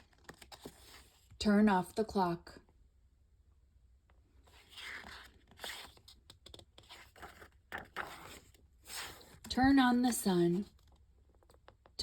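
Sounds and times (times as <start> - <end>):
rustling and scraping handling noise: 0.0 - 1.4, 4.4 - 11.8.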